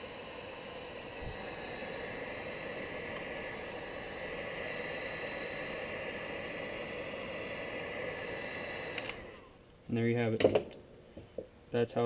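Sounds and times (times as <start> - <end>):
hot-air blower fan whooshing hum: 0.0 - 12.0.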